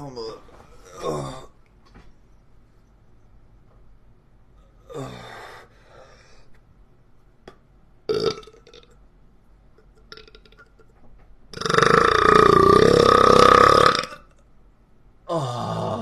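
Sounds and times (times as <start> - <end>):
person belching: 8.1 - 8.9, 11.5 - 14.3.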